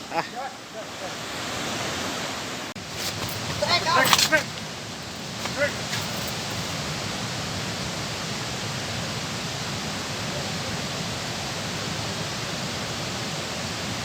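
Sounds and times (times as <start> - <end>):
water rushing through a dam: 3.3 - 14.0.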